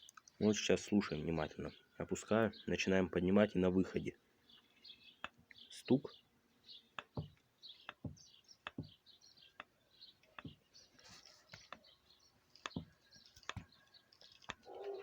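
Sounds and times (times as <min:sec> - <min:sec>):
birds chirping faintly: 0:00.0 - 0:15.0
shock absorber knocking: 0:07.0 - 0:09.0, 0:12.6 - 0:13.7.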